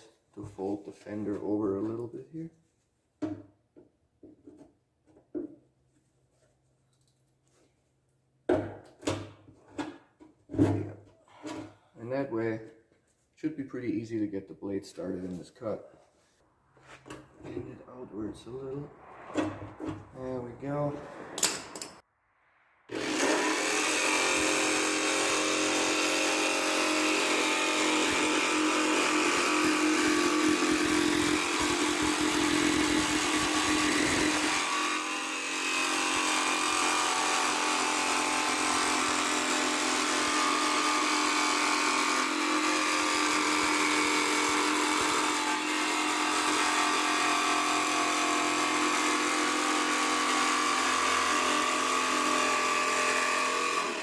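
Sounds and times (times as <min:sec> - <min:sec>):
jigsaw cutting sheet metal: 0:22.9 - 0:54.0.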